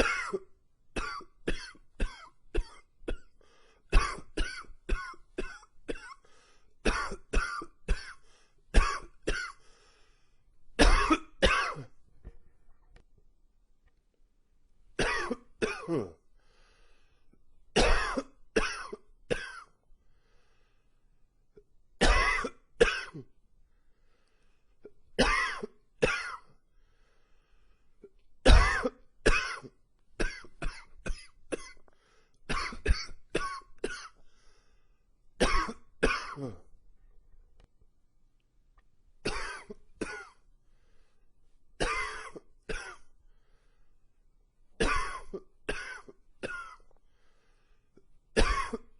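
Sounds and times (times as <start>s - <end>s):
man coughing: 0.0s - 6.2s, 6.8s - 8.2s, 8.8s - 9.6s, 10.8s - 11.9s, 15.0s - 16.2s, 17.8s - 19.7s, 22.0s - 23.3s, 25.2s - 26.5s, 28.5s - 31.8s, 35.4s - 36.7s, 39.3s - 40.4s, 41.8s - 43.1s, 44.8s - 46.9s, 48.4s - 48.9s.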